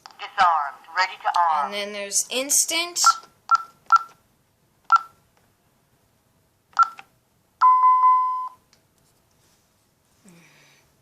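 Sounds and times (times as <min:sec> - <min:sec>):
alarm keypad beeps: 0:03.0 - 0:04.1, 0:07.6 - 0:08.6.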